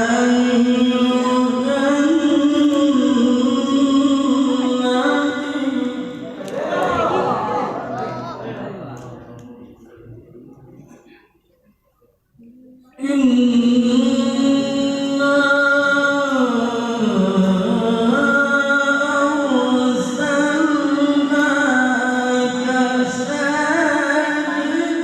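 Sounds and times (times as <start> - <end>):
man reciting melodically: 0.0 - 8.7, 12.9 - 25.0.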